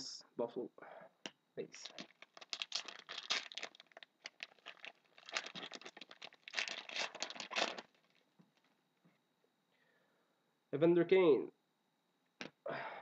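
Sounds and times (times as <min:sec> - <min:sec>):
foil wrapper tearing and crinkling: 0:01.8 - 0:08.2.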